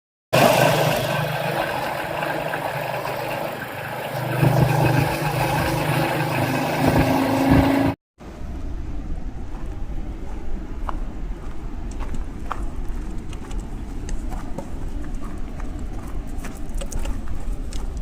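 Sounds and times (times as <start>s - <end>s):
motorcycle engine running: 0.4s - 8.0s
quiet low rumble: 8.2s - 18.0s.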